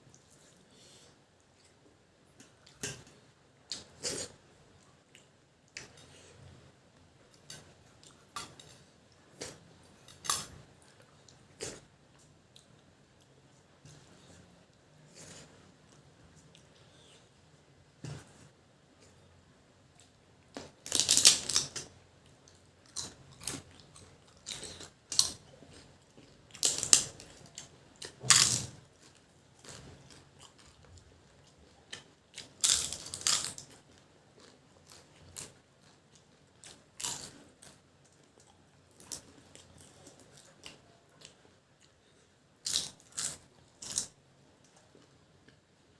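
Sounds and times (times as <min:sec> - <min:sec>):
person chewing and crunching food: 0:19.9 - 0:45.7.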